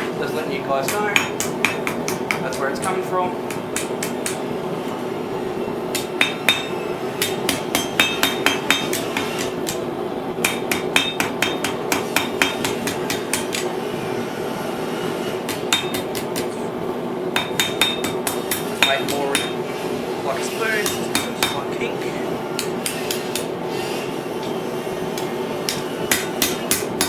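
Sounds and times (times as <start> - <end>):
steady hum: 0.0 - 27.0
hammer ringing on anvil: 6.0 - 9.8, 10.4 - 13.7, 15.5 - 16.5, 17.4 - 19.6, 20.8 - 21.7, 25.2 - 27.0.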